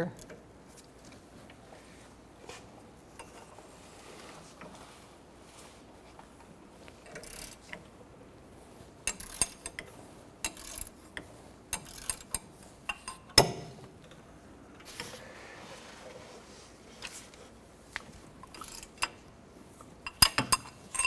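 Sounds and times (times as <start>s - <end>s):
ratchet clicking: 7.0s - 7.8s, 9.1s - 9.8s, 10.4s - 11.0s, 11.7s - 13.6s.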